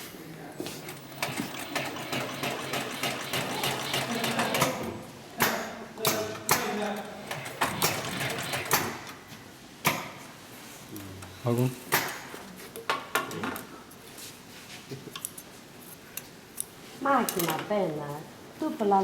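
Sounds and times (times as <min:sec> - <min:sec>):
sewing machine stitching: 0:00.6 - 0:05.0, 0:07.1 - 0:09.0.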